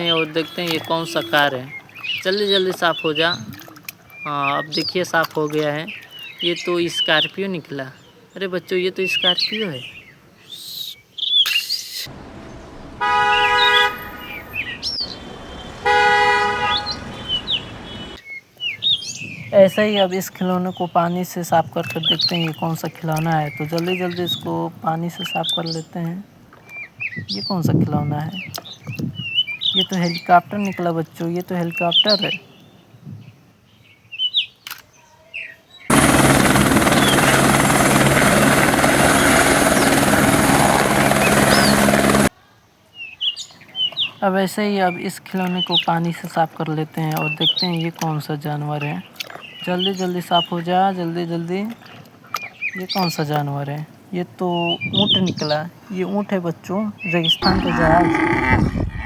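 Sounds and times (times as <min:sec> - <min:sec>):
birds chirping: 0:00.0 - 0:42.3, 0:54.4 - 0:59.0
car horn honking: 0:12.1 - 0:17.4
helicopter rotor drone: 0:35.9 - 0:42.3
faint background noise: 0:42.3 - 0:59.0.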